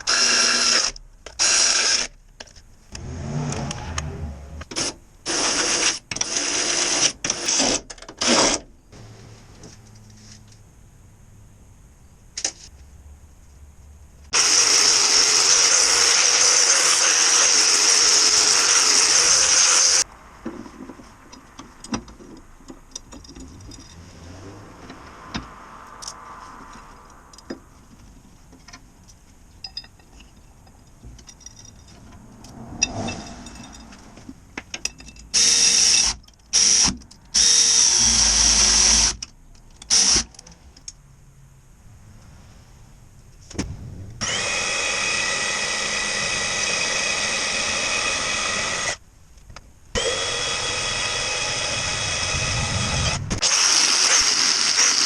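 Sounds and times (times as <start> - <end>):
power tool running: 14.4 - 20.0, 44.2 - 49.0, 50.0 - 55.0.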